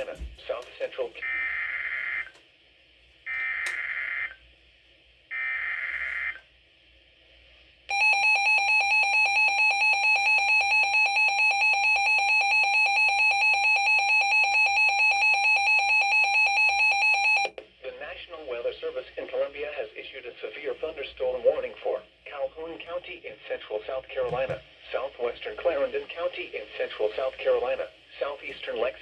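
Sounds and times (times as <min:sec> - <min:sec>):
rapidly pulsing alarm beep: 0:07.9 - 0:17.5.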